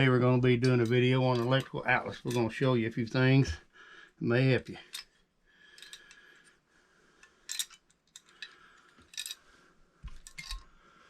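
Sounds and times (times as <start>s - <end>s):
faint handling clicks and rustling: 7.2s - 10.8s.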